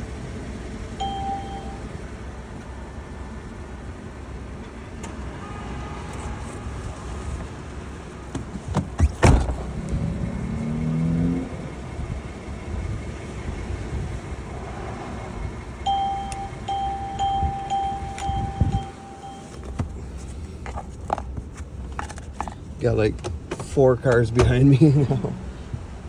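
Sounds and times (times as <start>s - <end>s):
car engine idling: 0.0s - 26.0s
electronic beeps: 1.0s - 1.8s, 15.8s - 19.6s.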